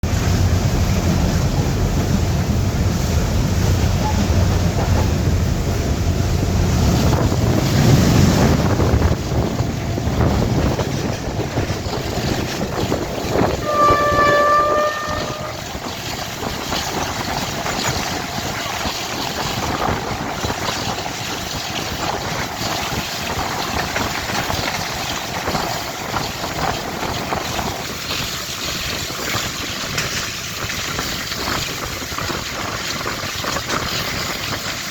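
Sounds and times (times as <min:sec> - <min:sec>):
diesel locomotive engine rumbling: 0:00.0 - 0:34.9
train coaches clattering over rails: 0:00.0 - 0:34.9
train horn blast: 0:13.4 - 0:15.9.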